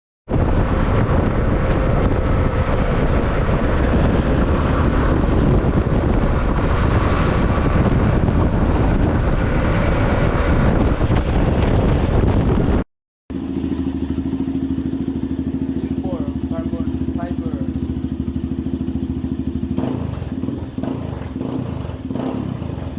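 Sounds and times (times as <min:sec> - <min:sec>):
motorcycle engine running loud: 0:00.3 - 0:22.9
motorcycle engine idling: 0:13.3 - 0:22.9.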